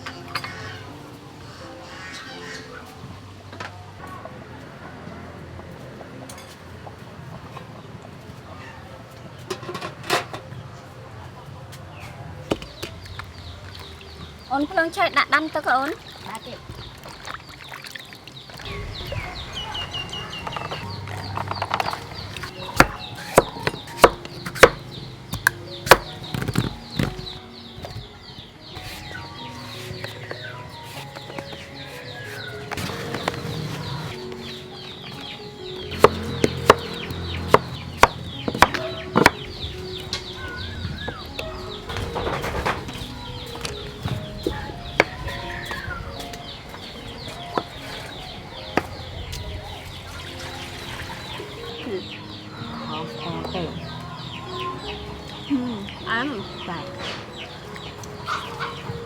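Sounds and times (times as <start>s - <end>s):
chickens clucking: 0.0s - 4.4s, 18.4s - 59.0s
knife chopping on wooden board: 22.4s - 28.0s, 36.0s - 39.4s.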